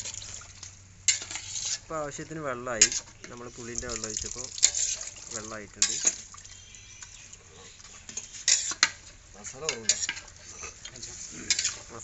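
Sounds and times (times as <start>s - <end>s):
spoon stirring in metal pot: 0.0s - 2.0s, 2.7s - 12.0s
spoon clanking against pot: 2.8s - 11.9s.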